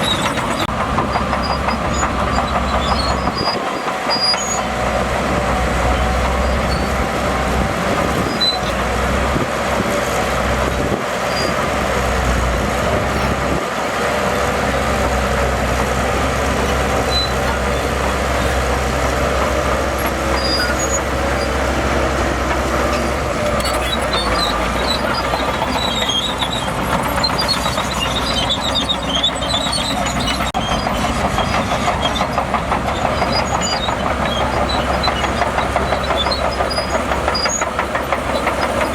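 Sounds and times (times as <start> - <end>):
heavy diesel machinery engine drone: 0.0 - 38.9
high-pitched squeaks: 20.0 - 21.6, 22.8 - 32.3.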